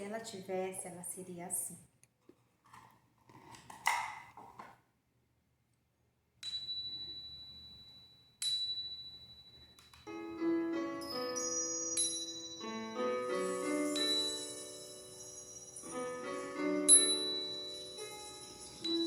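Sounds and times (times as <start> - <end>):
gentle instrumental tune: 10.0 - 19.0
metallic chime strikes: 11.0 - 19.0.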